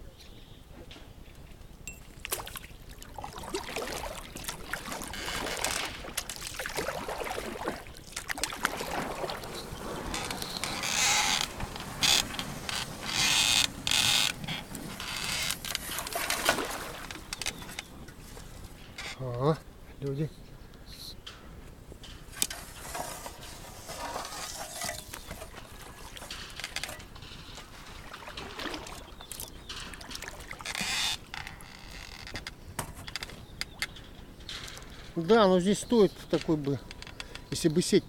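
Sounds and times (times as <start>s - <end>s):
oars splashing in water: 1.9s - 19.2s, 22.4s - 35.0s
oarlocks knocking and creaking: 3.2s - 19.4s, 21.2s - 37.7s.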